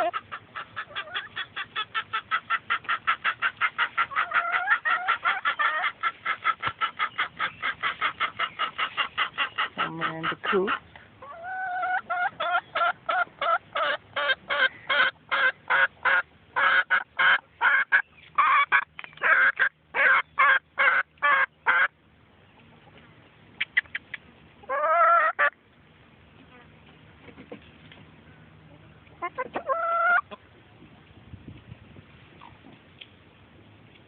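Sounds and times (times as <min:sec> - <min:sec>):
chicken squawking: 0:00.0 - 0:21.9, 0:23.6 - 0:25.5, 0:29.2 - 0:30.4.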